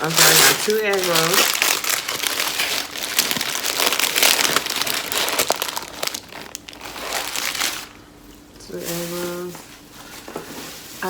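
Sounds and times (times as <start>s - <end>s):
sharp clicks of packaging: 0.0s - 7.9s
food packaging crinkling: 0.0s - 8.0s.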